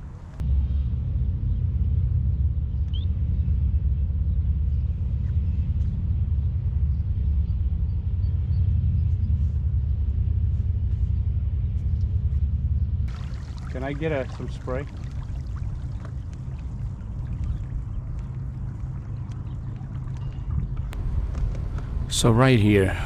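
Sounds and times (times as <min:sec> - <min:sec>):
steady low rumble: 0:21.0 - 0:23.0.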